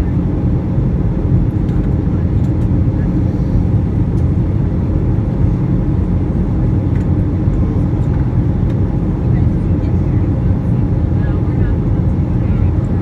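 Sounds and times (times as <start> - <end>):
airplane cabin engine roar: 0.0 - 13.0.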